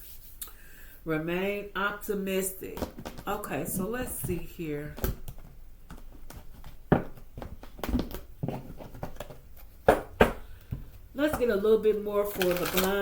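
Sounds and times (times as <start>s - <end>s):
cards being shuffled: 12.3s - 13.0s.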